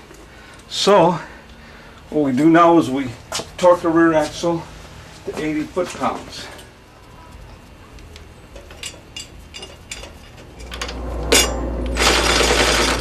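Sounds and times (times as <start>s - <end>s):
hand tools clinking: 8.5s - 11.0s
scraping rustling noise: 9.2s - 13.0s.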